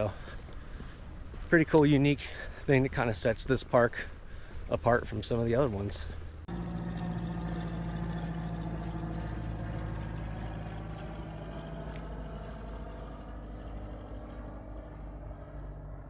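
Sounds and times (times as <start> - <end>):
propeller plane flying over: 6.4 - 16.0.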